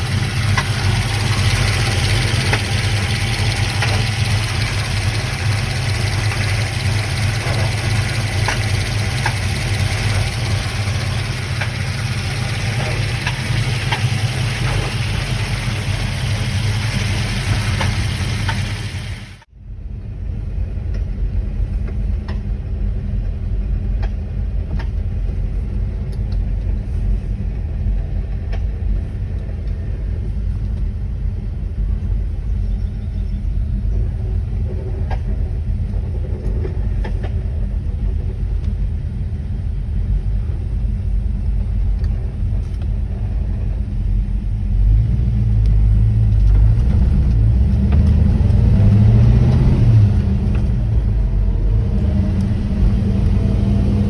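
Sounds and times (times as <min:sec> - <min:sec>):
faint engine ticks: 0:00.0 - 0:19.5, 0:23.2 - 0:31.0, 0:32.0 - 0:54.0
car engine rumbling: 0:00.0 - 0:54.0.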